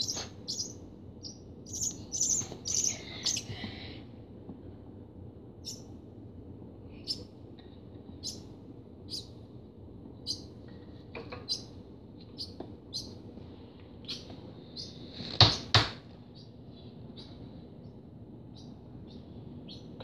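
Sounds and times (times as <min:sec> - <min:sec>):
nestling begging chirps: 0:00.0 - 0:03.6, 0:05.6 - 0:05.9, 0:08.2 - 0:08.5, 0:09.1 - 0:09.4, 0:10.2 - 0:10.5, 0:14.0 - 0:15.6.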